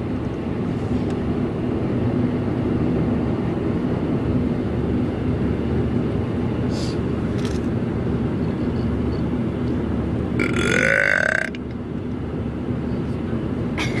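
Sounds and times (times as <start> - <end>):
road noise inside moving car: 0.0 - 14.0
loud belch: 10.4 - 11.6.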